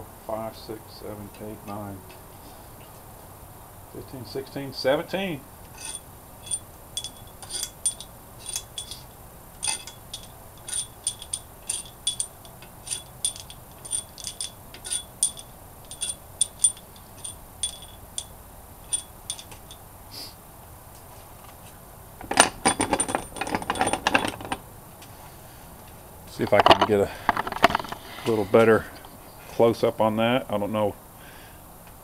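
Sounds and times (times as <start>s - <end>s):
rattling clatter: 5.8s - 9.0s, 9.6s - 18.3s, 22.2s - 24.6s, 26.4s - 28.4s
metal bolts clinking: 5.8s - 19.8s, 22.2s - 24.6s, 26.4s - 28.0s.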